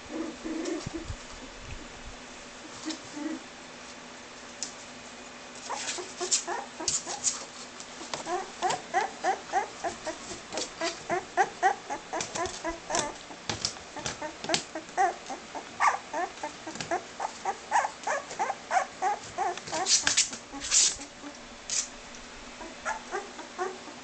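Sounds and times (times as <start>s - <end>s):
puppy whimpering: 5.6s - 7.4s, 8.0s - 21.4s, 22.6s - 24.0s.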